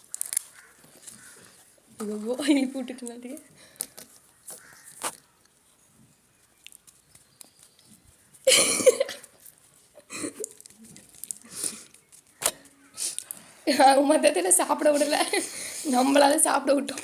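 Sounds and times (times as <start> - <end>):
faint clicks and handling noises: 3.3 - 8.4.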